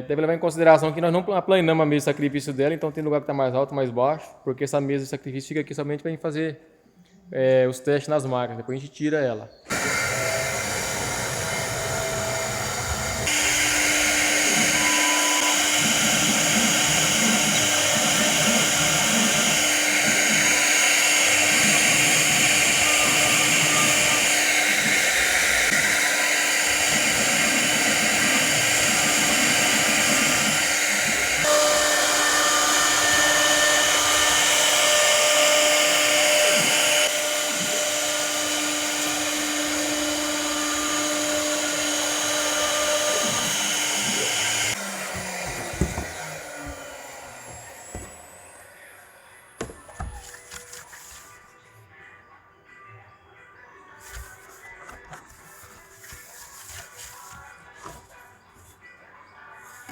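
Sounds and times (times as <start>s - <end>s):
router cutting metal sheet: 9.7s - 49.2s
router spindle whine: 9.7s - 50.2s.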